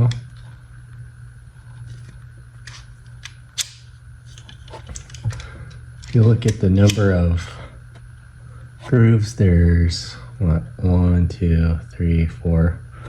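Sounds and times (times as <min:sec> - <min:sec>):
pliers metal clicks: 0:06.0 - 0:07.1.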